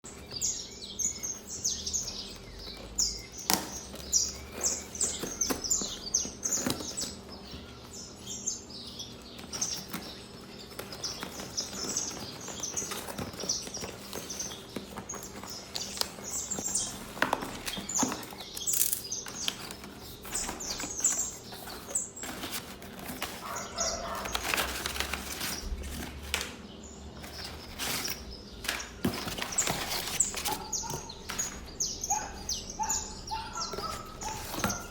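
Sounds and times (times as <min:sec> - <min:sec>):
birds chirping: 0:00.0 - 0:34.9
knocks and handling noises: 0:10.7 - 0:26.6, 0:27.2 - 0:31.7, 0:33.6 - 0:34.9.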